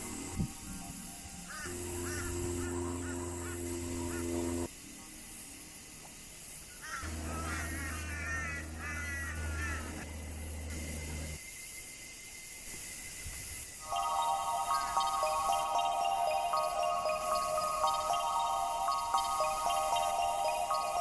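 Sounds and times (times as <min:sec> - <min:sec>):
held low chords: 0:00.0 - 0:04.7, 0:13.9 - 0:21.0
short chirping notes: 0:13.8 - 0:21.0.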